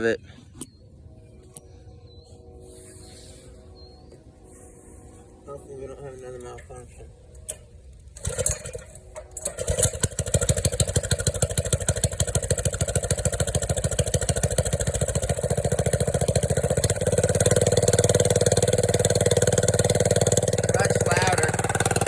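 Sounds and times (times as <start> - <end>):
engine starting and running: 5.5 - 22.0.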